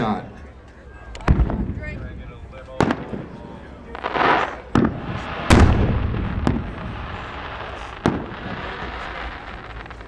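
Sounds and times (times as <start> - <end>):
firework bangs: 1.2 - 10.0
firework rushing burst: 2.8 - 10.0
low rolling boom: 4.7 - 10.0.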